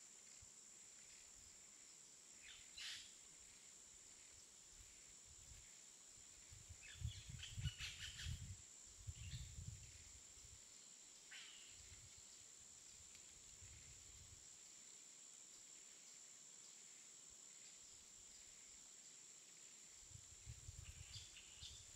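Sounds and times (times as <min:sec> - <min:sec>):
insect drone: 0:00.0 - 0:21.9
bird chirps: 0:02.4 - 0:03.2, 0:06.8 - 0:08.5.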